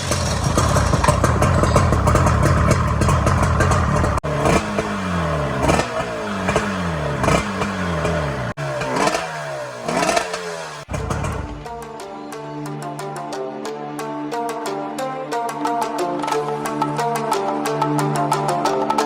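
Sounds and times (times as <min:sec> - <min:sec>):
two-stroke engine revving: 0:00.0 - 0:11.8.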